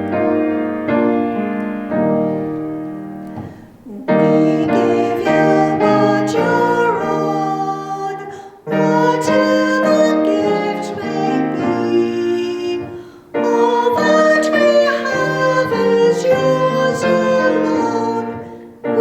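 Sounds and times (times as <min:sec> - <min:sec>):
piano playing hymn chords: 0:00.0 - 0:19.0
woman singing: 0:03.8 - 0:19.0.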